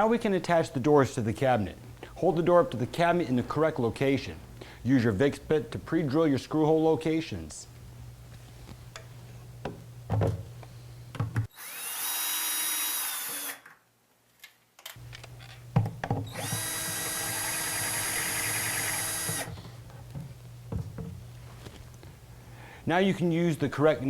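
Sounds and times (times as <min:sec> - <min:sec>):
drill spinning: 0:11.5 - 0:13.6, 0:16.3 - 0:19.7
handling knocks: 0:19.3 - 0:22.2.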